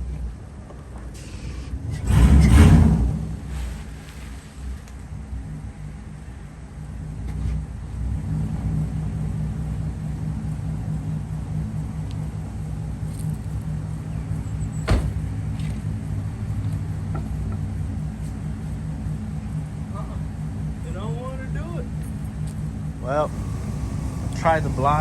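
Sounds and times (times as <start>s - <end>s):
car engine revving high: 23.0s - 25.0s.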